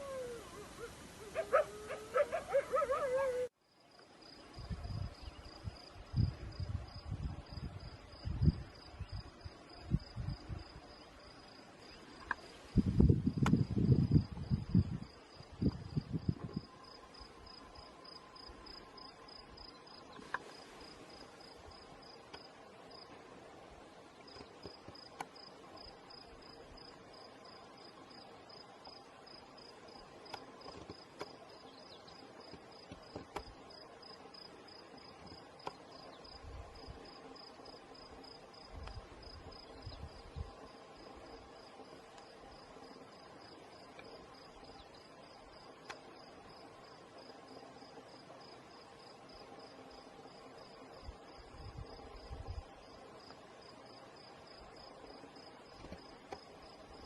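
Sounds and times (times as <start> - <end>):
cricket chirping: 0.0 - 23.2, 24.2 - 57.0
faint ticks: 30.3 - 31.4, 41.9 - 42.3, 45.8 - 46.1.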